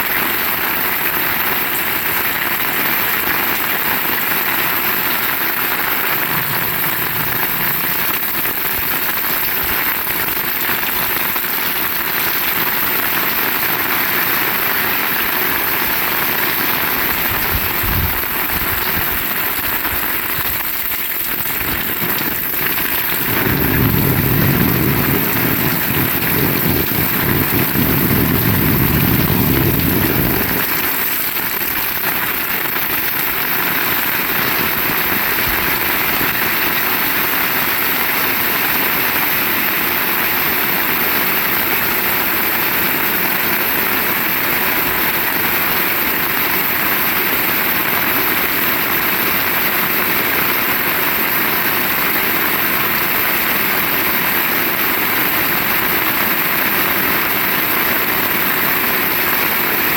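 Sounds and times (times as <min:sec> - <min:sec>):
heavy rain hissing: 0:00.2 - 0:54.2
low rumble: 0:06.0 - 0:08.8.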